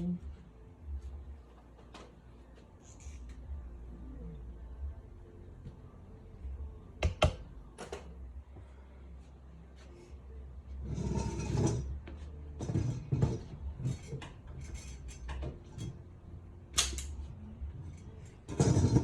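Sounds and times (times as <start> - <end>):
steady low hum: 0.0 - 19.0
metal parts and tools clinking: 12.6 - 16.0.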